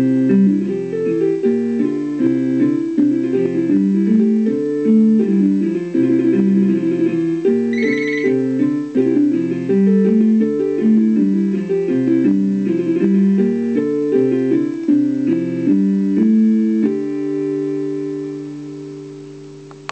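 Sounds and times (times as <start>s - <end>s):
plucked guitar melody: 2.6s - 9.5s.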